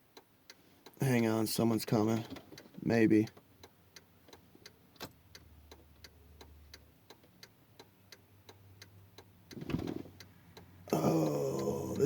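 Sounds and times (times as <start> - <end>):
car indicator ticking: 2.5 - 10.7.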